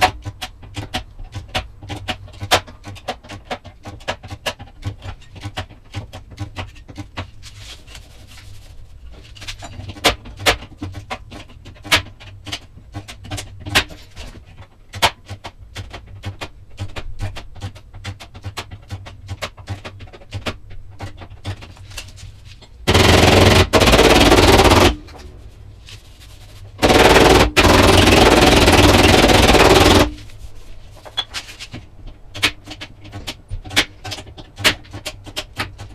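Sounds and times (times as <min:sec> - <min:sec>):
irregular clicks and knocks: 0:00.0 - 0:07.4, 0:09.2 - 0:25.4, 0:26.8 - 0:30.4, 0:31.0 - 0:35.9
power tool running: 0:22.9 - 0:25.0, 0:26.8 - 0:30.2.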